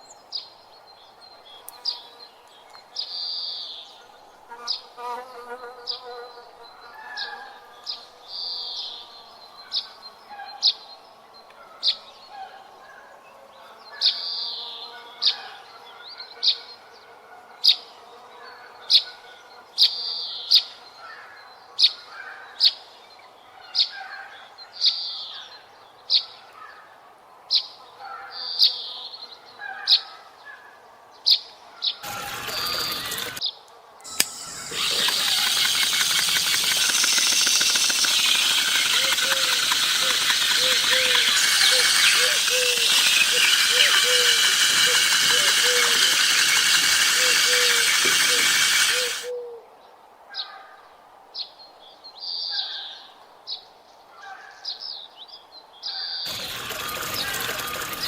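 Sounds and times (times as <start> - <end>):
birds chirping: 32.0 - 49.4, 56.3 - 58.0
soft bird warbling: 34.2 - 49.4.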